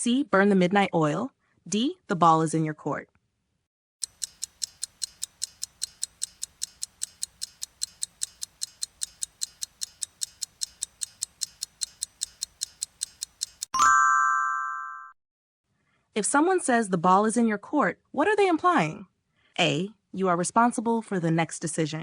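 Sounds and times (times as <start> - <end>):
clock ticking: 4.0 - 13.8.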